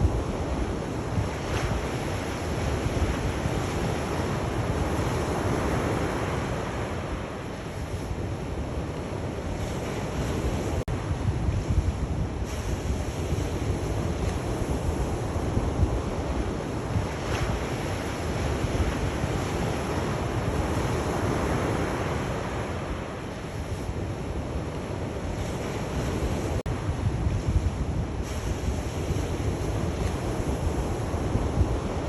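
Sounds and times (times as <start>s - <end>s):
surf breaking on shore: 12.3s - 24.0s.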